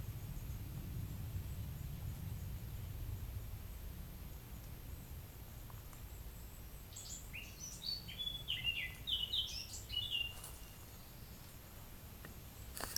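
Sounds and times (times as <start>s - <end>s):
songbird chirping: 6.0s - 12.9s.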